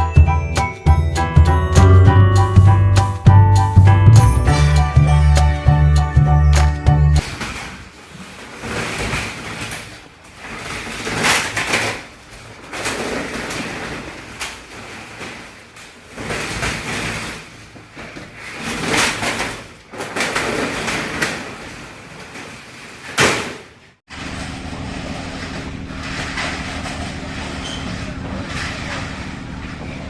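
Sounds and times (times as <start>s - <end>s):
rolling shutter rattling and scraping: 7.2s - 23.2s, 24.1s - 30.0s
mechanical hum: 7.2s - 30.0s.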